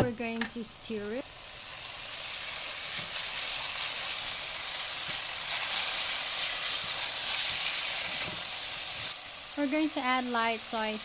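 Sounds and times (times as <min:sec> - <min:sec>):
vegetables sizzling in hot oil: 0:00.2 - 0:11.0.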